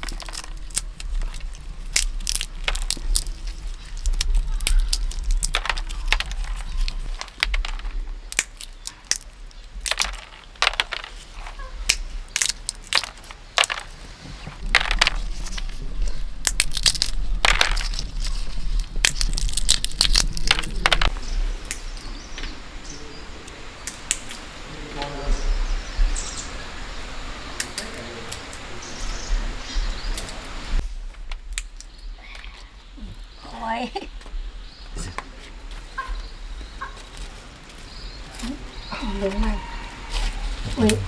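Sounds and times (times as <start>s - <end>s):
crunching and crackling: 0.0s - 22.6s, 34.1s - 41.0s.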